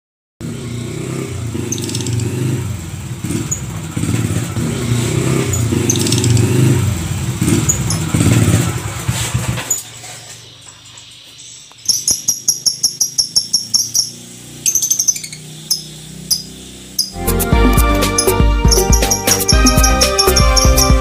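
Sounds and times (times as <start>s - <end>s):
engine running unevenly: 0.4s - 10.8s, 13.0s - 21.0s
short high chirps: 11.9s - 21.0s.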